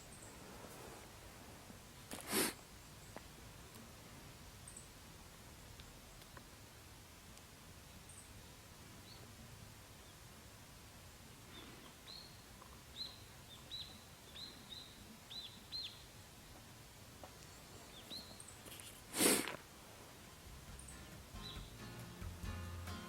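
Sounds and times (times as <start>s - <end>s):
small bird chirping: 11.5s - 16.2s, 17.4s - 19.0s, 20.7s - 21.8s.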